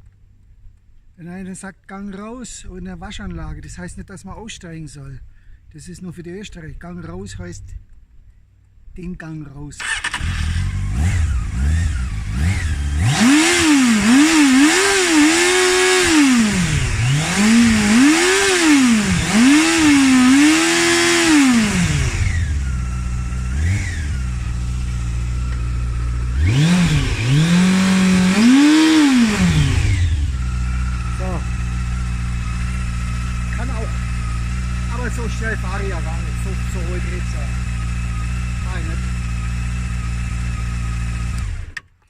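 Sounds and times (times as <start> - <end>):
motorcycle engine revving: 9.8 - 41.9.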